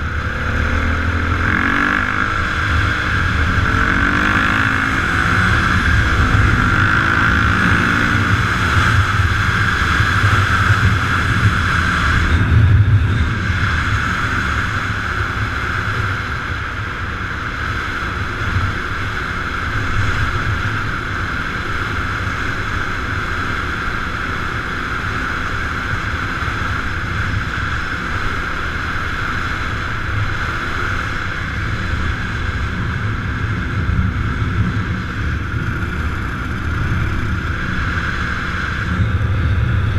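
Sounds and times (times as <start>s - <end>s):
wind noise on microphone: 0.0s - 22.4s, 25.0s - 39.9s
vehicle engine running: 0.0s - 39.9s.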